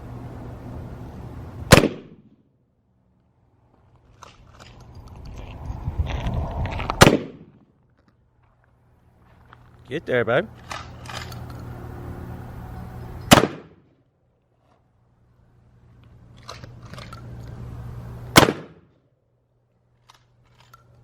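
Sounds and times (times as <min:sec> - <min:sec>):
shotgun shots: 0:01.7 - 0:02.3, 0:07.0 - 0:07.6, 0:13.3 - 0:13.8, 0:18.3 - 0:18.9.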